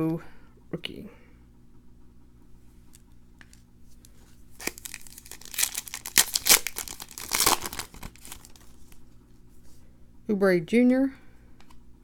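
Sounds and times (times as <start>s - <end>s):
card pack wrapper tearing: 4.6s - 9.0s.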